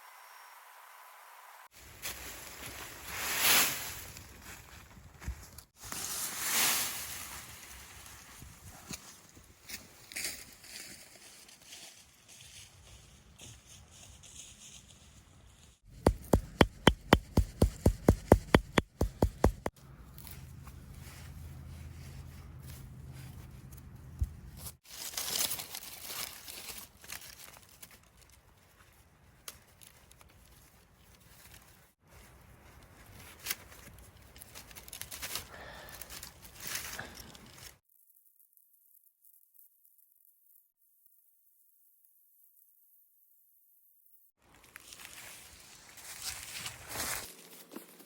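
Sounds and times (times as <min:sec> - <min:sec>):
sharp knocks: 0:16.0 - 0:19.7
leafy stems rustling and tearing: 0:24.9 - 0:31.7, 0:32.8 - 0:37.7.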